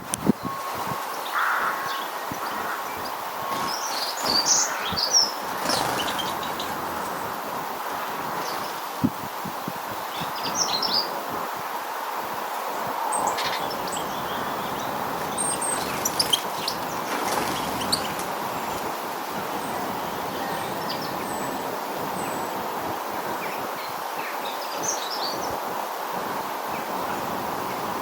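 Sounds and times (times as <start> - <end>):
small birds chirping: 0.1 - 11.3, 12.8 - 22.6.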